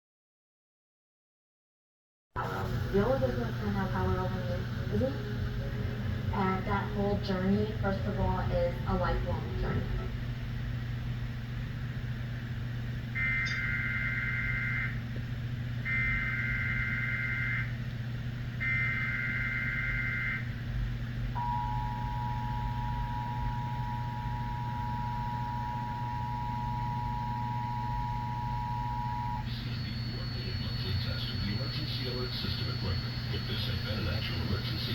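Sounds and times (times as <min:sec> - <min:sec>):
low hum: 0:02.4 - 0:34.9
two-tone attention signal: 0:13.2 - 0:15.0, 0:15.9 - 0:17.7, 0:18.6 - 0:20.4, 0:21.4 - 0:34.9
warbling data tone screech: 0:13.2 - 0:15.0, 0:15.9 - 0:17.7, 0:18.6 - 0:20.5, 0:21.4 - 0:34.9.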